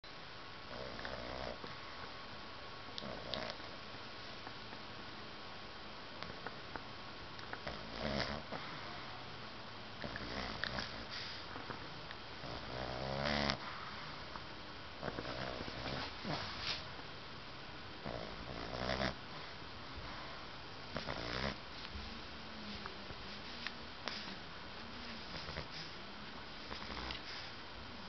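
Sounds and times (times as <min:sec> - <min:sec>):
pet snoring: 0:00.7 - 0:01.7, 0:03.0 - 0:03.7, 0:07.6 - 0:08.6, 0:10.0 - 0:11.4, 0:12.4 - 0:13.7, 0:15.0 - 0:16.5, 0:18.0 - 0:19.2, 0:20.9 - 0:21.6, 0:25.2 - 0:26.0, 0:26.6 - 0:27.5.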